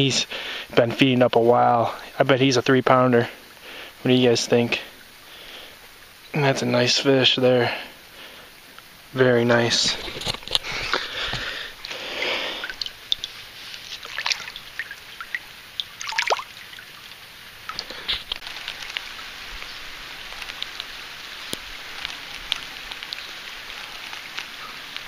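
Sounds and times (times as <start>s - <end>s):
rain hiss: 0.0s - 25.0s
water sloshing splash: 9.9s - 18.4s
drops ticking: 10.5s - 13.4s, 14.0s - 19.0s.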